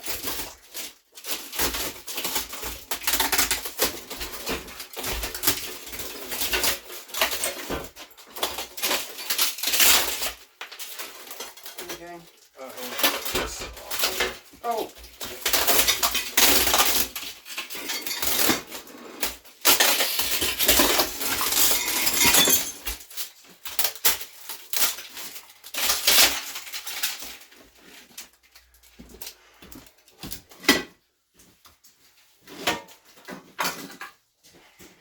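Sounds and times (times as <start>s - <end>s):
demolition debris clattering: 0.5s - 28.2s.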